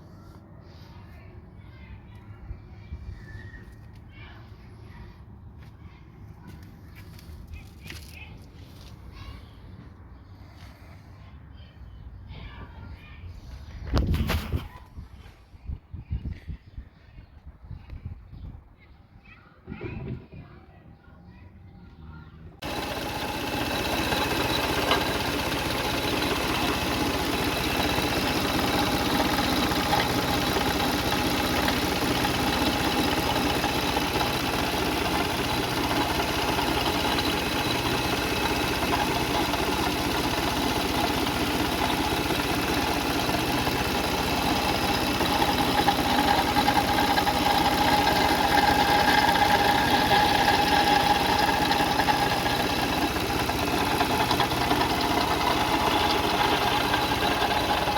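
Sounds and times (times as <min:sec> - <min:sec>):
car engine idling: 0:22.6 - 0:57.9.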